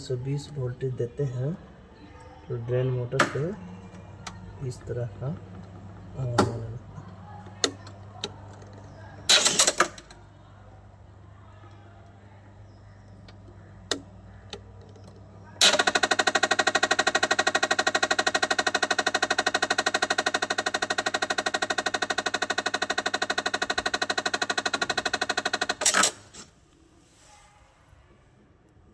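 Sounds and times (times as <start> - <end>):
drain motor rattling buzz: 3.2 - 10.1, 13.1 - 26.5
clicks: 3.2 - 10.2, 13.0 - 26.8.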